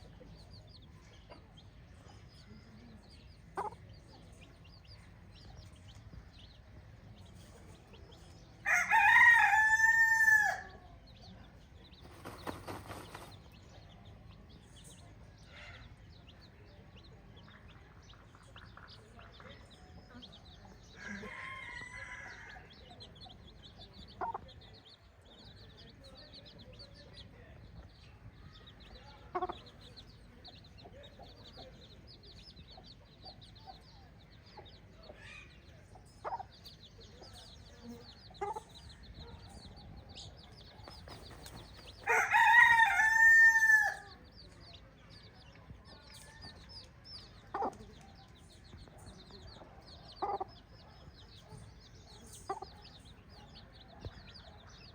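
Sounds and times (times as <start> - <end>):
chickens clucking: 0.0 - 9.6, 10.2 - 43.8, 44.4 - 54.9
rooster crowing: 8.6 - 10.7, 42.0 - 44.1.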